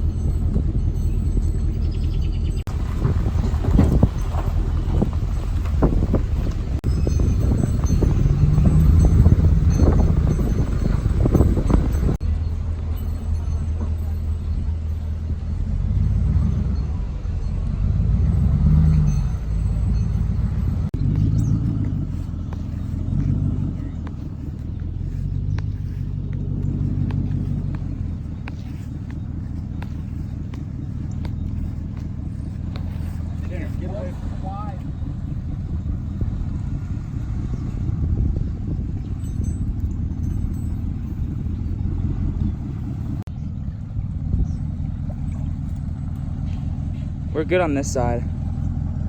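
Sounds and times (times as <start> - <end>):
vehicle engine rumbling: 0.0 - 49.0.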